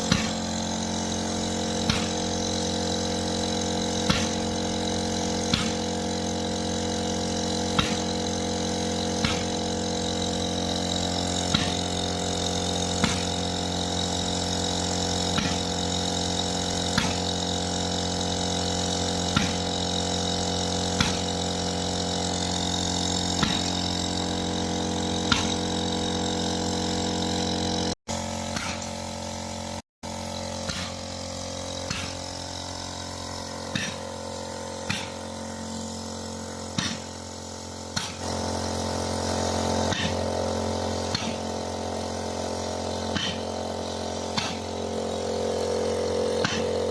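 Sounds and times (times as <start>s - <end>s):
spray machine humming: 0.0s - 46.9s.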